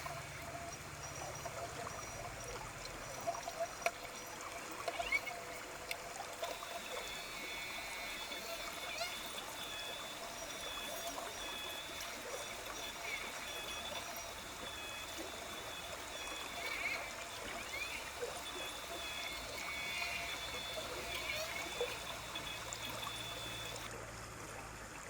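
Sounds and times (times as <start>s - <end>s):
stream trickling: 0.0s - 25.0s.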